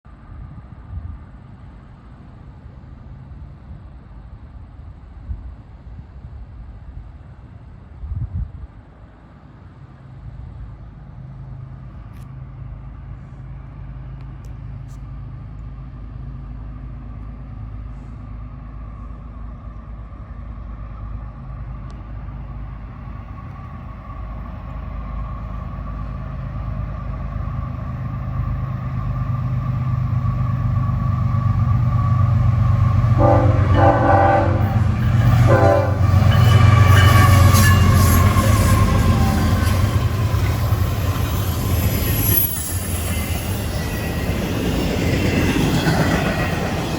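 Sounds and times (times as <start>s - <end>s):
diesel locomotive engines rumbling: 0.1s - 46.9s
wheel and rail noise: 8.8s - 46.9s
locomotive air horn: 33.0s - 40.2s.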